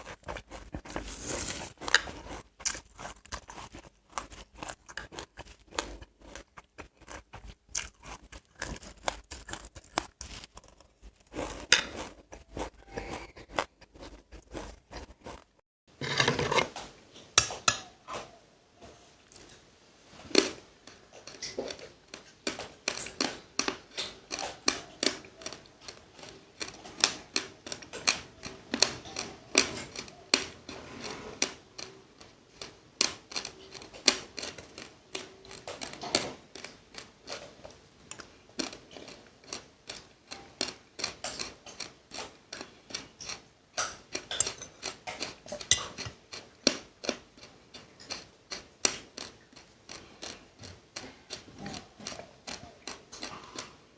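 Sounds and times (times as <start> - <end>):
seeds being chewed: 0.0 - 15.6, 20.2 - 53.9.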